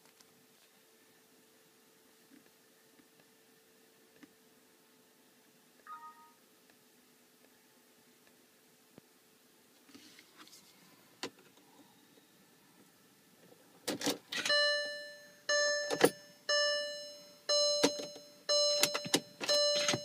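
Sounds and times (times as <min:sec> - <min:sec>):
bell-like warning chime: 0:14.5 - 0:20.0.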